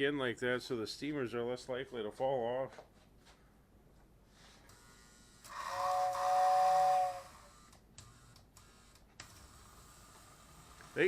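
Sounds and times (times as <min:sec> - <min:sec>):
toy train whistle: 0:05.5 - 0:07.5.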